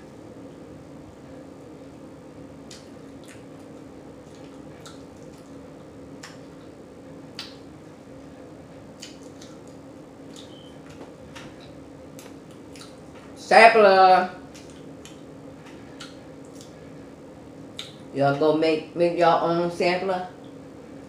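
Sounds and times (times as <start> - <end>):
faint steady hum: 0.0 - 21.0
mouth smacking and chewing: 2.7 - 7.6, 9.0 - 11.1, 12.1 - 13.0, 16.0 - 16.8, 17.7 - 18.0.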